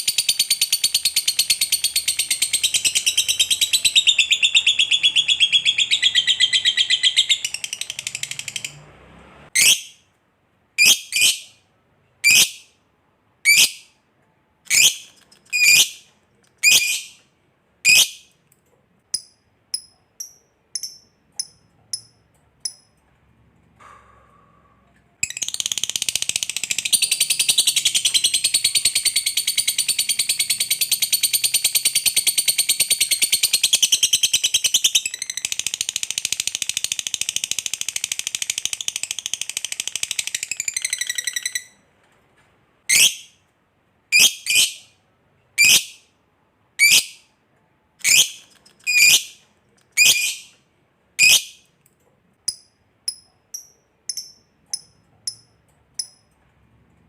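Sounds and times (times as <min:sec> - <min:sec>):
sharp bird calls: 0:00.0 - 0:08.8.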